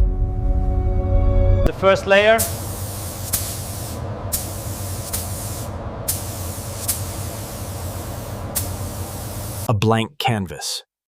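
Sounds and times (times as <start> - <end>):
steady low hum: 0.0 - 9.7
spray gun hissing: 2.4 - 9.7.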